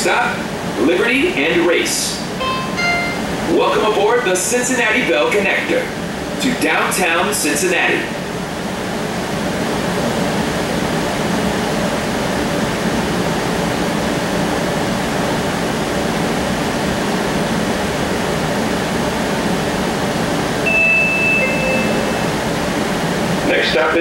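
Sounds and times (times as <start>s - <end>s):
high electronic tone: 2.4s - 3.6s, 20.7s - 22.8s.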